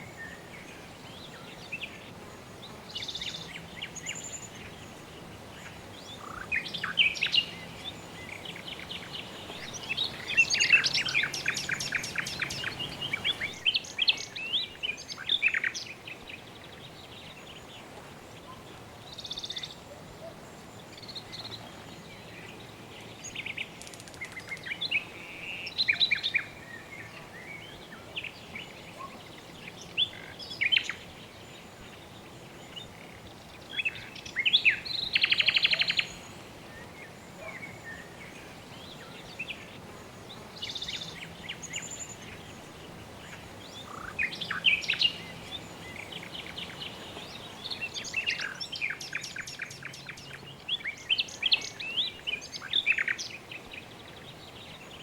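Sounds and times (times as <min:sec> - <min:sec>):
faint steady hiss: 0:00.0 - 0:55.0
birds chirping and trilling: 0:00.2 - 0:17.8, 0:18.4 - 0:55.0.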